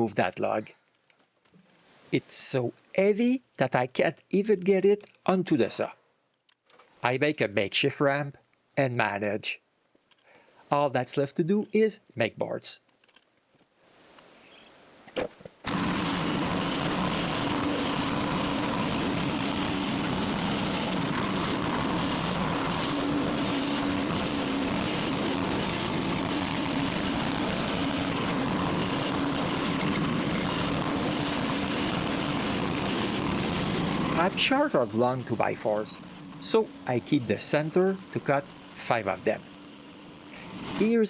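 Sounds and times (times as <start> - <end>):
sawmill engine sawing log: 15.7 - 41.0.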